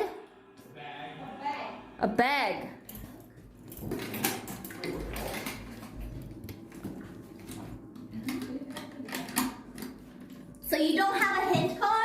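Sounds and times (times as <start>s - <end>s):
hard objects clicking and rattling: 2.9s - 10.6s.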